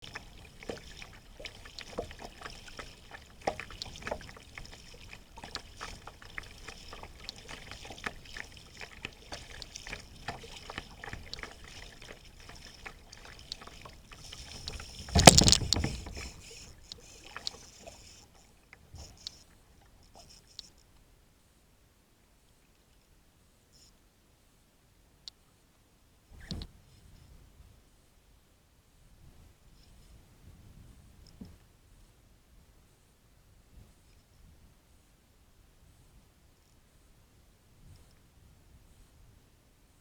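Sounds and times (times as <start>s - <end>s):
water lapping: 0.0s - 20.4s
knocks on kayak: 15.1s - 16.2s.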